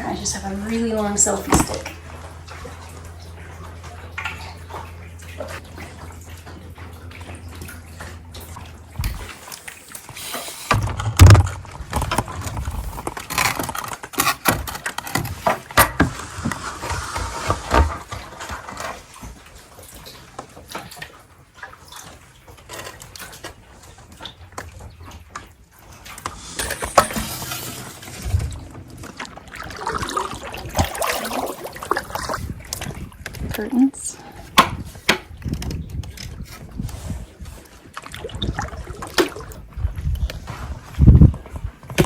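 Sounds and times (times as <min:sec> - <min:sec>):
steady low hum: 0:00.0 - 0:20.4, 0:25.8 - 0:37.5
water sloshing and dripping: 0:00.0 - 0:42.0
loud thump: 0:10.7 - 0:11.6
paddle knocking on boat: 0:10.7 - 0:13.0, 0:34.5 - 0:35.6.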